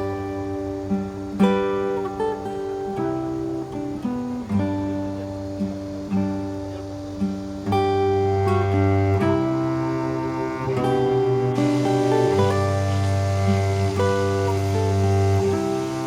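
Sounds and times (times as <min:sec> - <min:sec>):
acoustic guitar music: 0:00.0 - 0:16.0.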